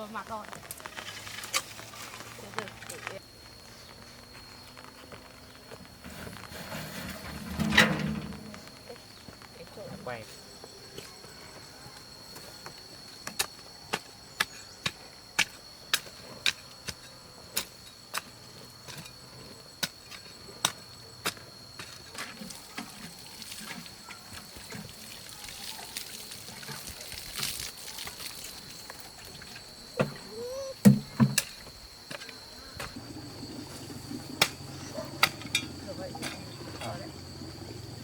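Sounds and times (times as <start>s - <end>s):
insects chirring: 0.0s - 38.0s.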